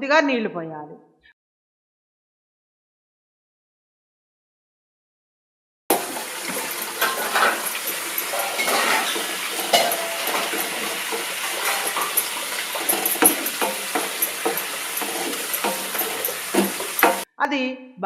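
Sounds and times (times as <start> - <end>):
spoon clinking and scraping pan: 5.9 - 17.2
steady hiss of melting syrup: 5.9 - 17.2.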